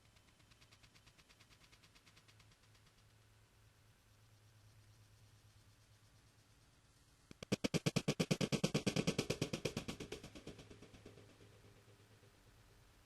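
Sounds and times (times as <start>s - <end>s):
rapid sharp rattling taps: 0.0s - 3.4s, 7.3s - 12.7s.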